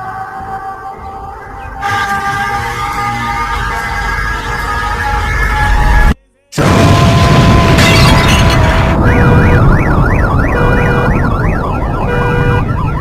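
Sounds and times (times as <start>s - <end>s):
emergency siren sound effect: 0.0s - 13.0s
loud blast: 6.6s - 11.2s.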